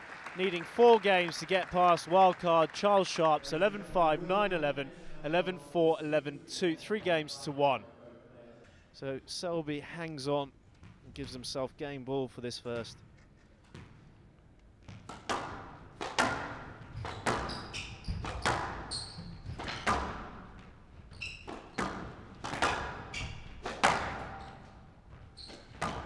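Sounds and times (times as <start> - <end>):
shoes squeaking on court floor: 13.0 - 26.0
squash ball cracking off rackets: 14.8 - 20.7, 21.4 - 26.0.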